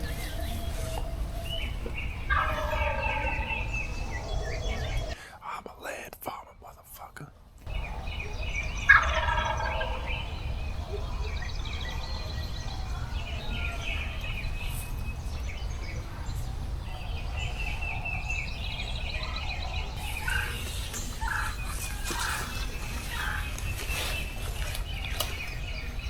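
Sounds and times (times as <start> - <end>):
turkey gobbling: 0.0 - 5.2, 8.2 - 13.8, 19.1 - 25.4
small birds chirping: 0.0 - 26.0.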